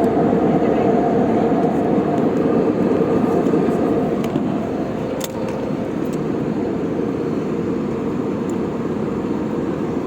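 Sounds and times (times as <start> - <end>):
airliner cabin drone: 0.0 - 10.0.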